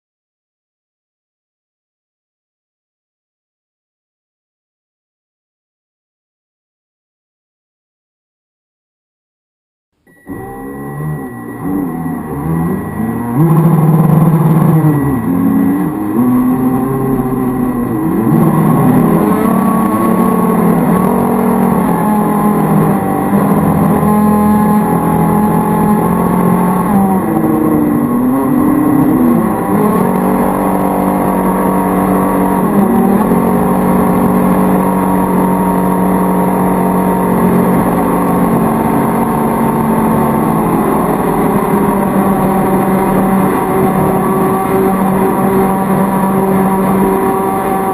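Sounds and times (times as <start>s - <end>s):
rc boat electric motor whining: 10.1s - 47.9s.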